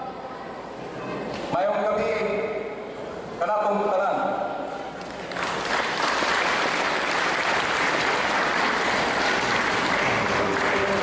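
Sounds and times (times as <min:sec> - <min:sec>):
audience applauding: 0:05.0 - 0:11.0.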